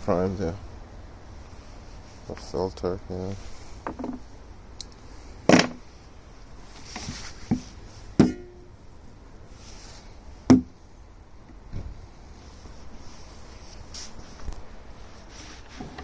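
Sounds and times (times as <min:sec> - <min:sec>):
faint knocks and rustles: 0:03.4 - 0:04.3, 0:06.6 - 0:08.4, 0:11.4 - 0:16.0
sharp clunks: 0:08.2 - 0:08.6.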